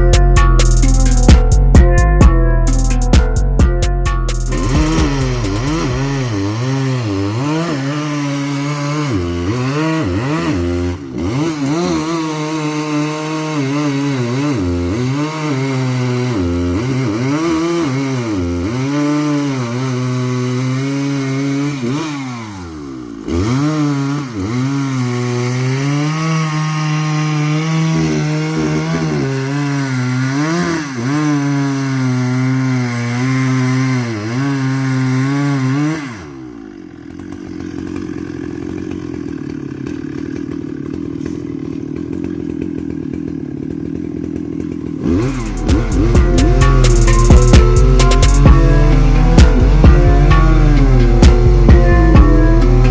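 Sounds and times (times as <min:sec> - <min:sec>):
chainsaw cutting wood: 0:00.0 - 0:52.9.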